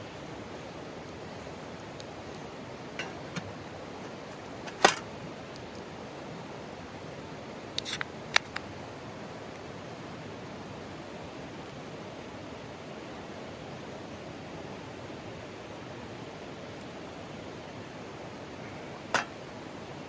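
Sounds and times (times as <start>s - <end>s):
camp gear clicking and clinking: 0.4s - 5.8s, 19.1s - 19.3s.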